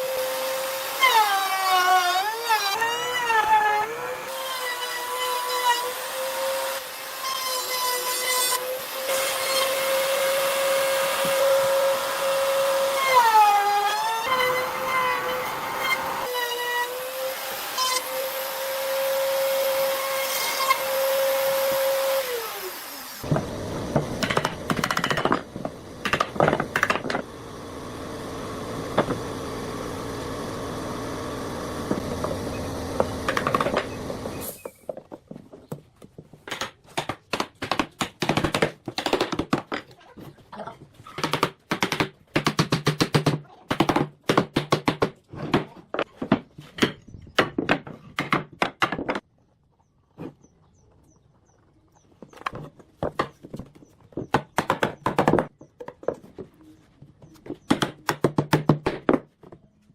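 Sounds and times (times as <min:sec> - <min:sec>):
power tool motor whining: 0:13.9 - 0:18.6.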